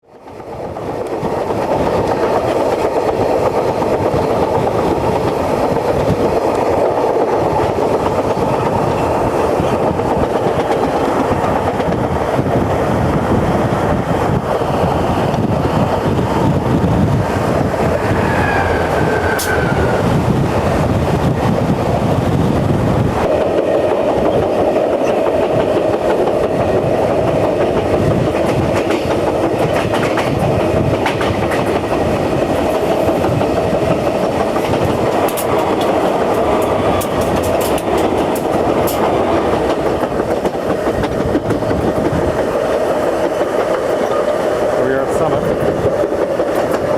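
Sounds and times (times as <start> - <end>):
train wheels clattering on rails: 0.1 - 46.9
faint squeal: 17.8 - 20.1.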